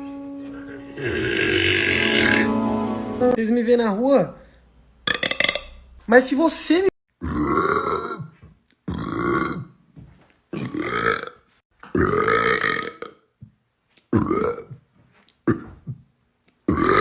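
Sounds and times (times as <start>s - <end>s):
loud human burps: 1.0s - 2.4s, 7.2s - 9.8s, 10.5s - 13.2s, 14.1s - 14.8s, 15.4s - 16.0s, 16.7s - 17.0s.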